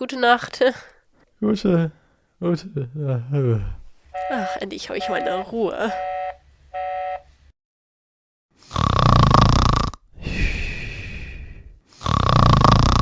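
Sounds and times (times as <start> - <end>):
man snoring: 8.6 - 13.0
breathy exhale: 10.1 - 12.3.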